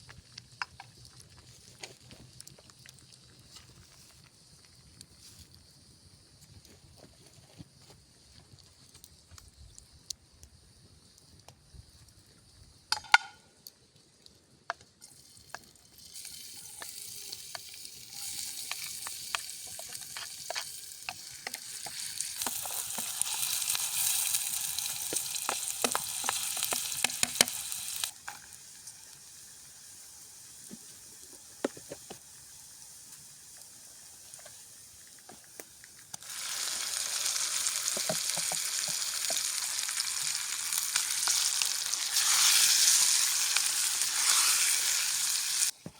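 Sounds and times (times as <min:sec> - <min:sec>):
livers sizzling in a pan: 0:14.8 - 0:45.8.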